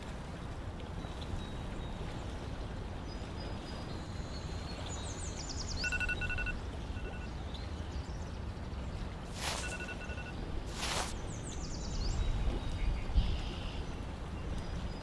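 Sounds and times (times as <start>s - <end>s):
rapid repeated pips: 9.4s - 11.2s.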